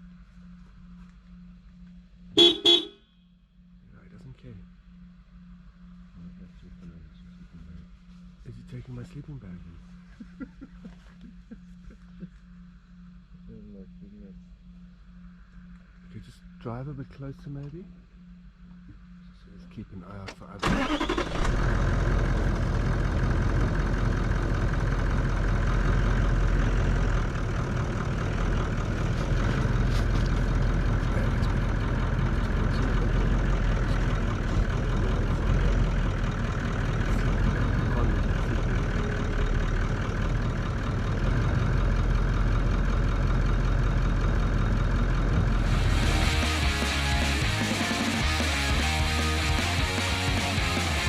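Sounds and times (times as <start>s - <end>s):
vehicle engine idling: 0.0s - 51.0s
music: 45.6s - 51.0s.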